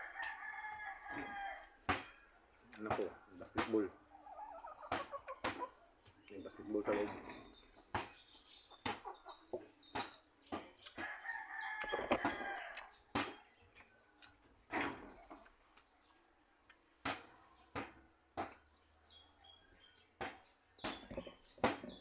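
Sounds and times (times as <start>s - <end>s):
rooster crowing: 0.0s - 1.8s, 11.0s - 12.9s.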